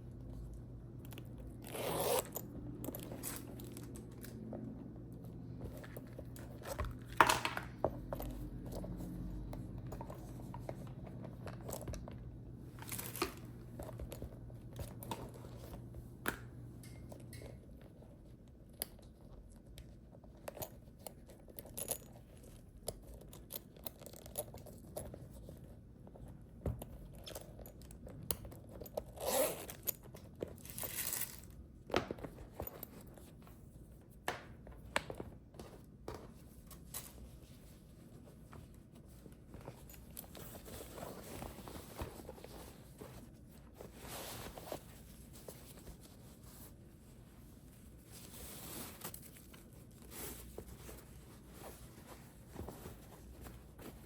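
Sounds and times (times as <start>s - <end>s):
leather bag clicks and scrapes: 0.4s - 16.0s, 20.2s - 25.8s, 28.6s - 33.7s, 35.5s - 54.0s
crinkling rustles: 34.8s - 54.0s.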